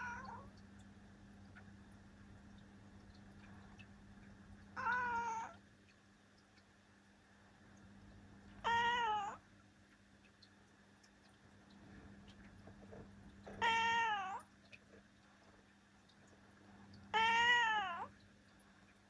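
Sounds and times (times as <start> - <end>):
cat meowing: 0.0 - 0.4, 4.8 - 5.6, 8.6 - 9.4, 13.6 - 14.4, 17.1 - 18.1.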